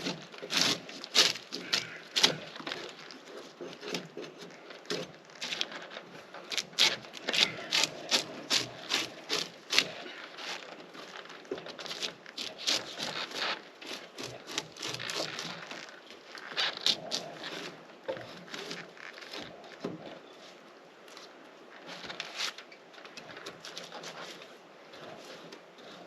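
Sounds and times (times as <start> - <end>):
drawknife scraping bark off log: 0.0 - 5.8, 6.4 - 15.9, 16.5 - 19.6.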